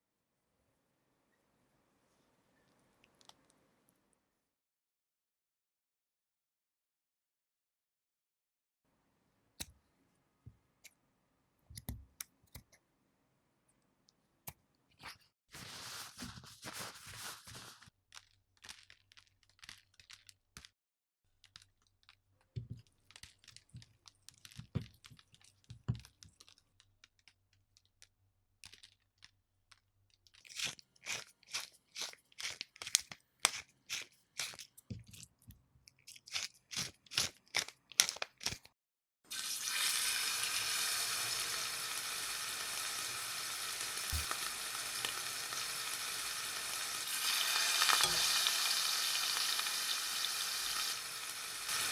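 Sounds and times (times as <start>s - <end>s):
food sizzling in a pan: 39.3s - 51.9s.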